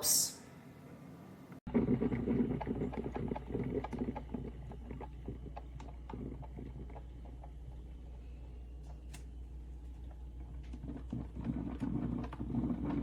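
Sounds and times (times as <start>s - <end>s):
steady low hum: 0.4s - 13.0s.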